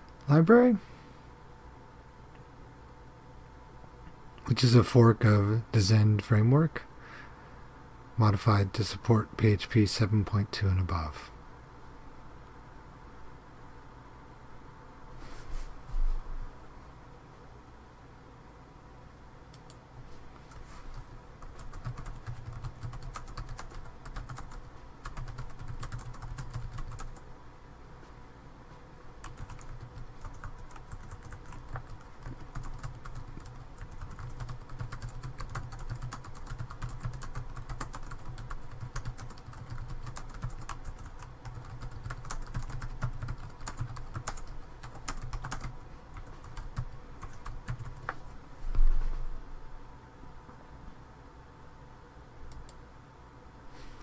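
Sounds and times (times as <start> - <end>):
low steady hum: 0.0 - 54.0
typing on a keyboard: 21.4 - 27.2, 29.2 - 48.1.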